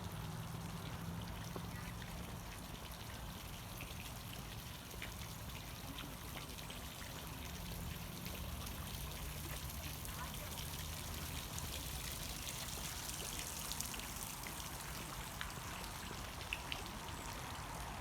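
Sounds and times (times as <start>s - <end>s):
water trickling and splashing: 0.0s - 18.0s.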